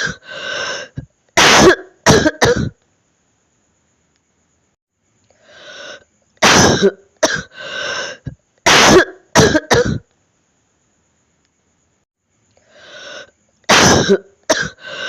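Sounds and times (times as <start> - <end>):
person coughing with phlegm: 0.0 - 0.2, 1.4 - 2.8, 6.4 - 7.5, 8.7 - 10.0, 13.7 - 14.8.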